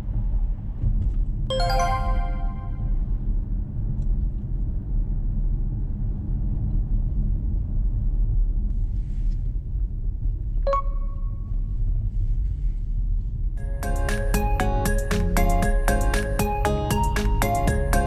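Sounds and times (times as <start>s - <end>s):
brief ringing tone: 1.5s - 3.0s.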